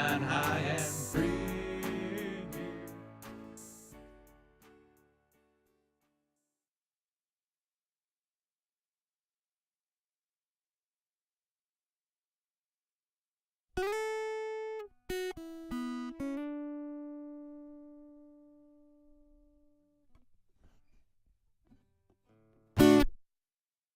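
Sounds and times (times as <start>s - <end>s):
acoustic guitar picking notes: 0.0s - 5.1s, 13.8s - 19.1s, 22.8s - 23.1s.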